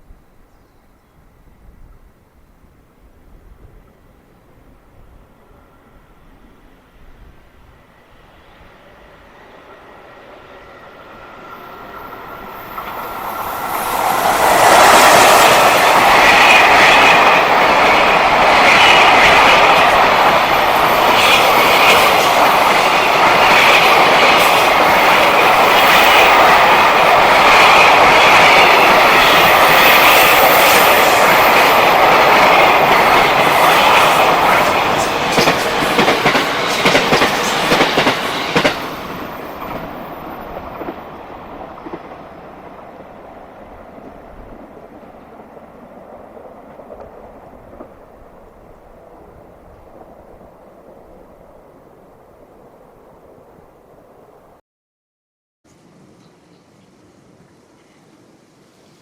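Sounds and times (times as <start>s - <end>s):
freight train rumbling past: 1.4s - 54.6s.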